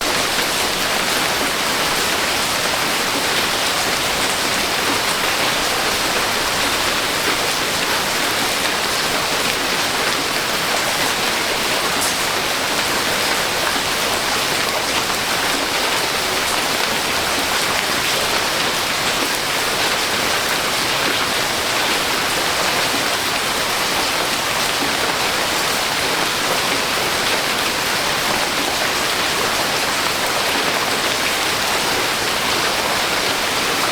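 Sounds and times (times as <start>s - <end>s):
dense rainfall: 0.0s - 33.9s.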